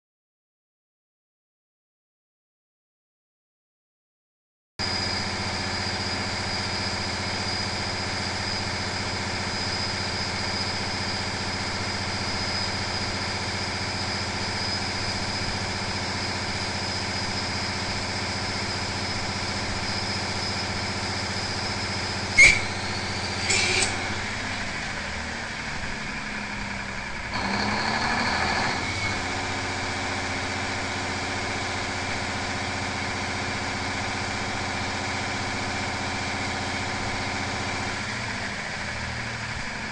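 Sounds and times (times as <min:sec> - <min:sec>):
diesel engine running under load: 0:04.8 - 0:39.9
high turbo whine: 0:04.8 - 0:39.9
rough noise with sliding pitch: 0:09.5 - 0:29.9.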